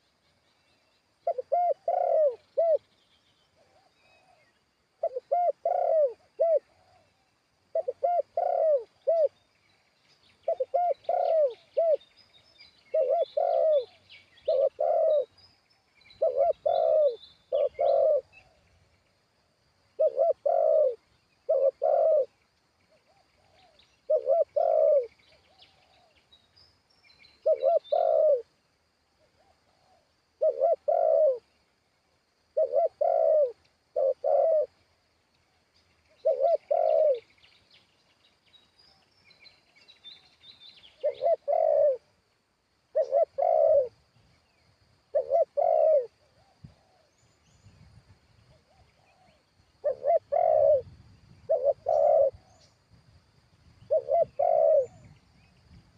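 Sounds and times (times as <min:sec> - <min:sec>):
small birds chirping: 0:00.0 - 0:28.5, 0:29.2 - 0:55.9
dove cooing: 0:01.2 - 0:02.9, 0:03.6 - 0:09.4, 0:10.4 - 0:12.1, 0:12.8 - 0:15.4, 0:16.1 - 0:18.6, 0:19.9 - 0:22.4, 0:23.0 - 0:26.2, 0:27.4 - 0:28.5, 0:29.3 - 0:31.5, 0:32.5 - 0:34.8, 0:36.2 - 0:37.3, 0:40.9 - 0:42.1, 0:42.9 - 0:44.0, 0:45.1 - 0:47.3, 0:48.5 - 0:52.8, 0:53.8 - 0:55.2.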